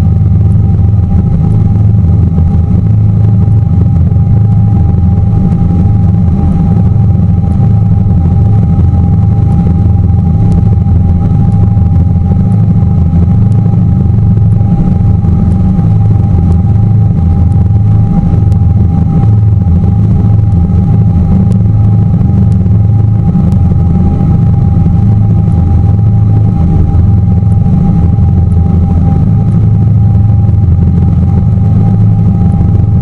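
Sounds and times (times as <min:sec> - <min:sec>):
boat motor rumbling: 0:00.0 - 0:33.0
faint steady hum: 0:00.0 - 0:33.0.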